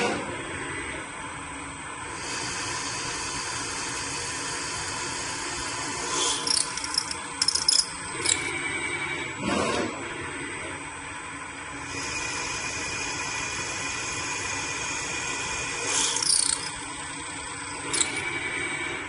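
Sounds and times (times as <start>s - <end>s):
sharp high-pitched rattles: 6.4s - 8.5s, 16.0s - 17.0s, 17.9s - 18.2s
milling machine running: 16.0s - 17.0s, 17.9s - 18.3s.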